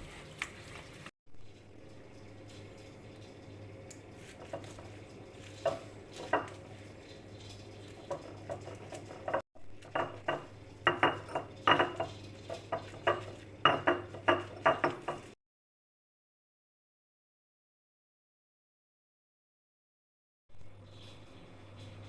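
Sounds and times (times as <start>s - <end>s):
spoon clinking against container: 2.6s - 15.4s.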